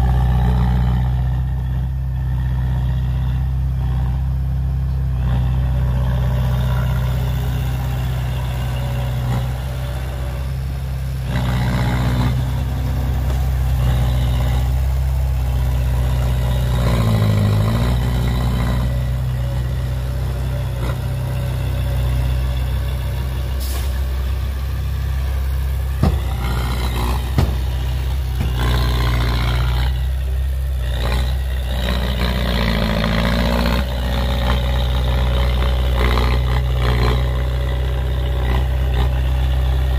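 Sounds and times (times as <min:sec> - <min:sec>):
heavy diesel engines running: 0:00.0 - 0:39.9
sharp knocks: 0:26.0 - 0:28.8.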